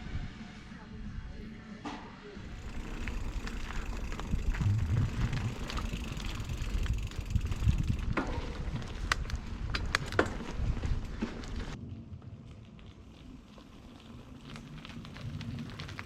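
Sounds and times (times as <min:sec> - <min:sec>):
wind buffeting microphone: 0:02.4 - 0:12.2
bicycle clicks and rattles: 0:02.5 - 0:11.8, 0:12.4 - 0:16.0.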